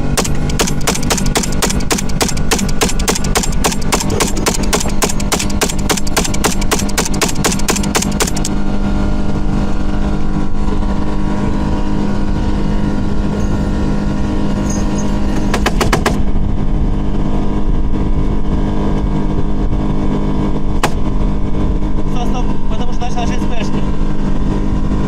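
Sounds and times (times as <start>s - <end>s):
machine-gun fire: 0.0s - 8.6s, 15.5s - 16.3s
speedboat engine running: 0.0s - 25.0s.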